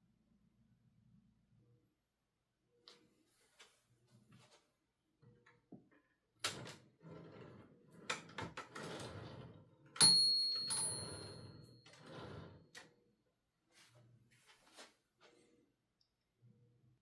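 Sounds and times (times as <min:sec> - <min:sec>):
typewriter bell ring: 0:10.0 - 0:12.0.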